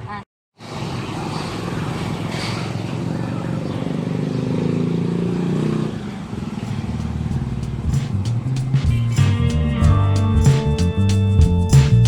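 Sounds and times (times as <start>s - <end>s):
vehicle engine running: 2.9s - 12.0s.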